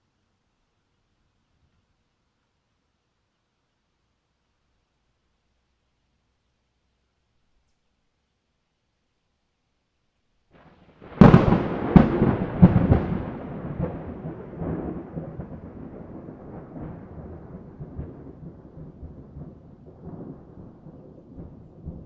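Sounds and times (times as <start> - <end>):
thunder cracks: 10.6 - 22.0
thunder rumble: 10.6 - 22.0.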